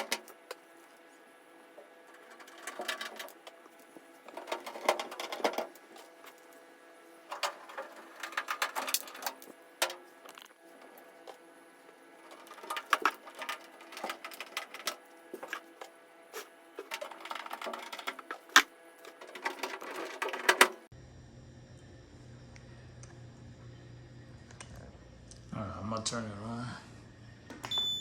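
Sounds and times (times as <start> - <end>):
clicking and rattling of parts: 0.0 - 0.6, 2.1 - 6.5, 7.3 - 11.4, 12.2 - 16.0, 16.8 - 20.9.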